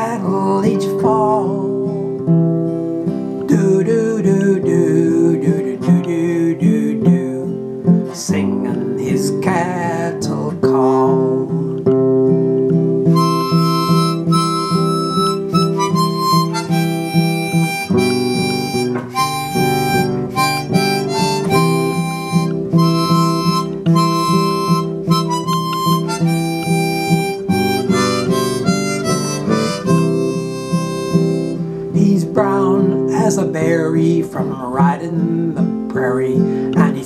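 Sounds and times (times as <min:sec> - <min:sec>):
strummed acoustic guitar: 0:00.0 - 0:37.0
harmonica melody: 0:12.3 - 0:34.8.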